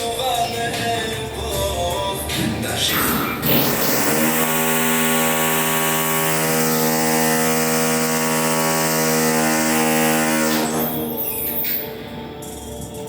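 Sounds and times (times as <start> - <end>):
electric power drill running: 3.5 - 11.9.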